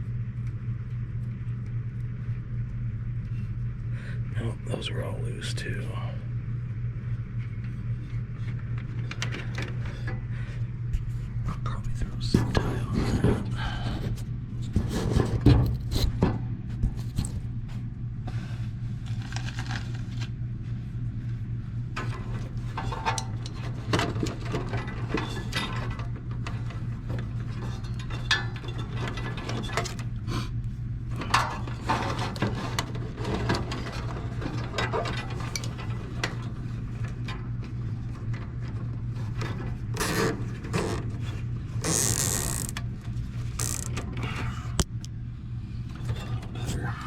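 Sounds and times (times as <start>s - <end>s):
steady low hum: 0.0s - 47.0s
clicks rubs and scrapes: 14.0s - 16.2s, 18.3s - 20.4s, 39.2s - 45.0s.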